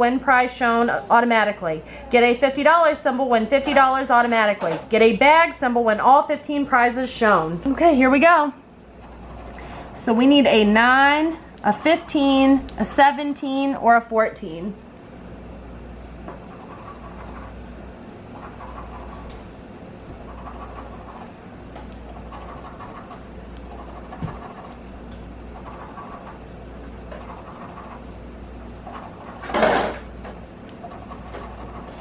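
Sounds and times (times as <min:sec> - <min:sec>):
scraping a scratch ticket: 0:08.9 - 0:12.4, 0:16.4 - 0:17.6, 0:18.4 - 0:19.4, 0:20.2 - 0:21.3, 0:22.0 - 0:24.8, 0:25.6 - 0:26.5, 0:27.1 - 0:28.2, 0:28.8 - 0:30.0, 0:30.8 - 0:32.0.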